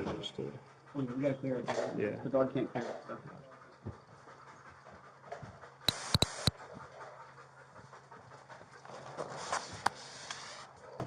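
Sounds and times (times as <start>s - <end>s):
dog panting: 0.2s - 11.0s
sharp clicks: 5.9s - 6.5s.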